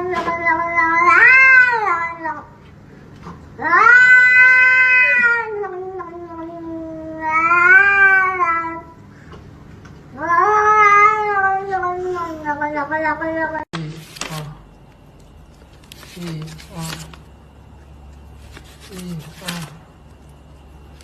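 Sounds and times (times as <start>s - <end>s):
cat yowling: 0.0s - 2.5s, 3.6s - 8.9s, 10.2s - 13.7s.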